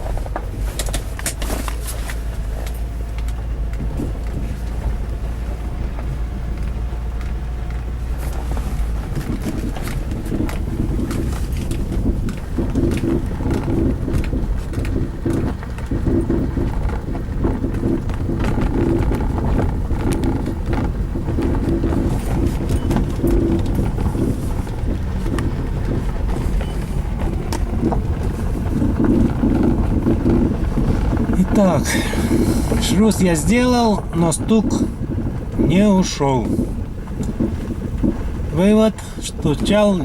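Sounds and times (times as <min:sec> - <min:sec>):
road noise rumble: 0:00.0 - 0:40.0
suspension knocks: 0:00.0 - 0:40.0.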